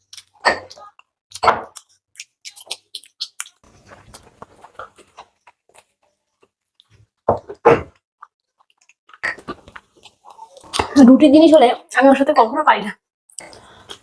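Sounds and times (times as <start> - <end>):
wet mouth clicks and smacks chewing: 0.1 - 6.9.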